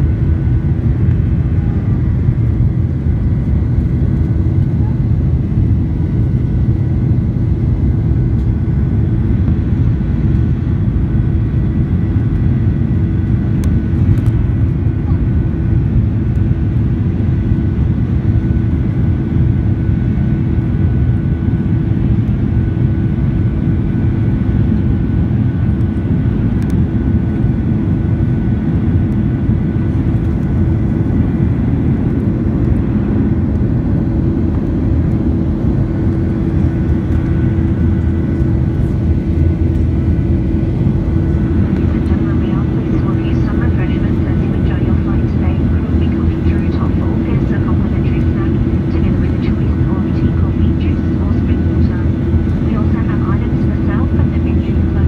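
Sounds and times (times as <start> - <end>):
jet engines droning: 0.0 - 55.0
faint steady hum: 25.7 - 55.0.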